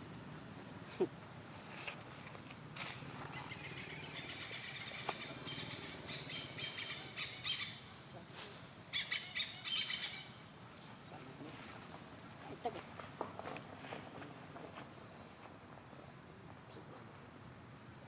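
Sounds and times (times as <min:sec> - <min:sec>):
birds chirping and twittering: 0:03.2 - 0:08.0, 0:08.9 - 0:10.5.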